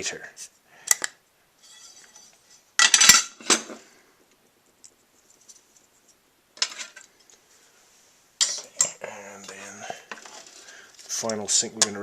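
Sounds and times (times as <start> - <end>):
metal parts clinking and clattering: 2.8 - 3.8.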